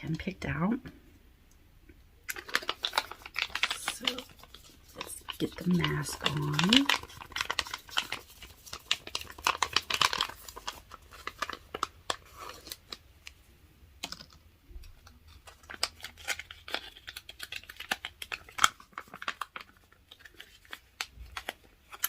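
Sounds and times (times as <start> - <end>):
wrapper crinkling: 2.2 - 13.4, 15.0 - 22.0
packet tearing open: 2.3 - 13.0, 15.3 - 22.0.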